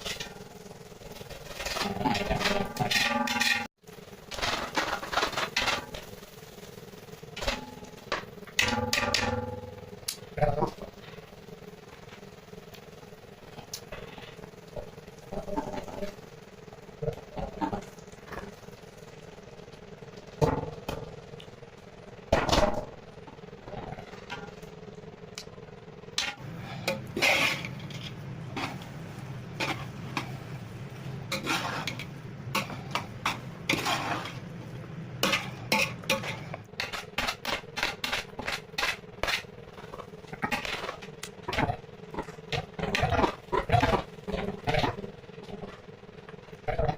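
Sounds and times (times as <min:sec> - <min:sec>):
steady low hum: 0:00.0 - 0:46.9
metal utensils scraping a pot: 0:01.4 - 0:03.7, 0:26.2 - 0:28.8, 0:29.6 - 0:30.3, 0:31.3 - 0:34.4, 0:35.2 - 0:41.7.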